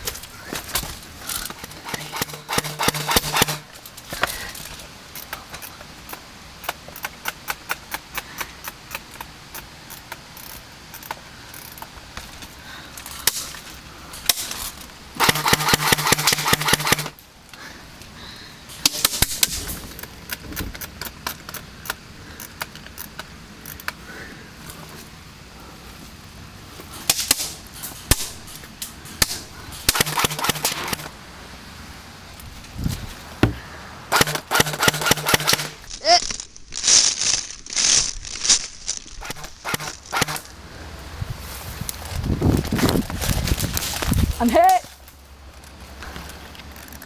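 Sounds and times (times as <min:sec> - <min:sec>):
airsoft gun firing rapid bursts: 0:01.8 - 0:03.7, 0:15.2 - 0:17.2, 0:29.9 - 0:31.1, 0:34.1 - 0:35.8, 0:39.3 - 0:40.4.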